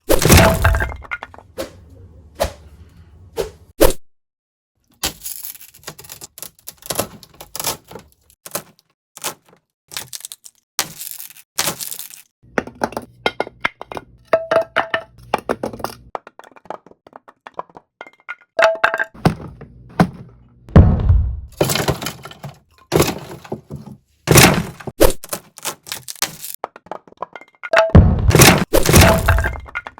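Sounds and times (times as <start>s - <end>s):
wooden box being smashed: 0.1s - 1.4s, 8.5s - 12.2s, 20.8s - 23.7s, 24.3s - 29.9s.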